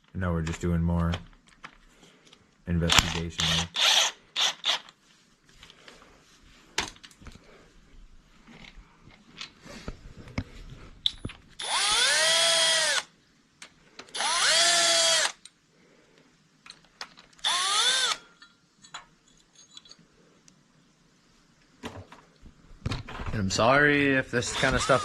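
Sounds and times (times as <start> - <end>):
power tool motor whining: 3.4 - 4.9, 11.6 - 13.1, 14.2 - 15.4, 17.4 - 18.2, 24.5 - 25.0
metal tools clinking: 18.3 - 20.0.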